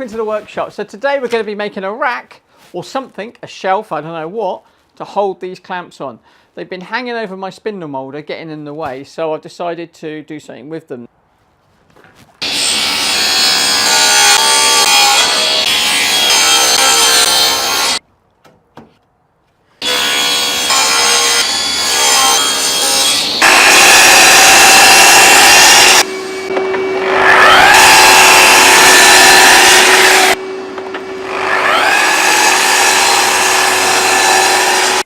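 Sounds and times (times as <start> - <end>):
power saw cutting plywood: 12.4 - 18.0, 19.8 - 35.0.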